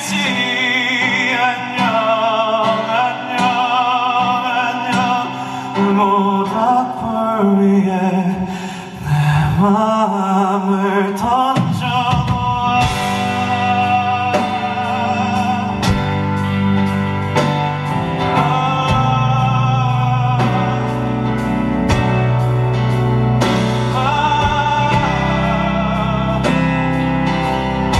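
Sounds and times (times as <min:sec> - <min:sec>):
keyboard: 0:00.0 - 0:27.9
man singing with vibrato: 0:00.0 - 0:27.9
bass: 0:11.2 - 0:27.9.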